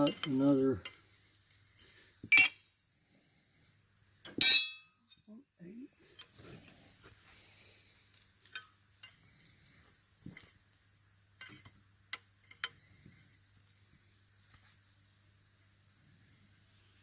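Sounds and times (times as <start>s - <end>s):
metal wrenches clinking: 2.3s - 2.7s, 4.4s - 5.3s.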